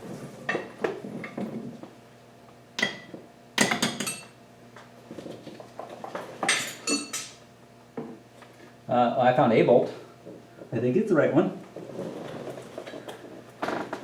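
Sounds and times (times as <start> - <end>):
metal tools clinking: 6.5 - 7.4.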